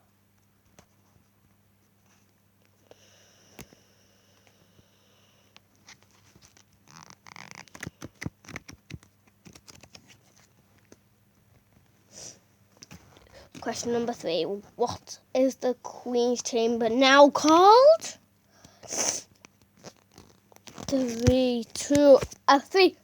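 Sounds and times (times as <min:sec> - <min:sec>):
faint rustling: 0:18.6 - 0:22.6.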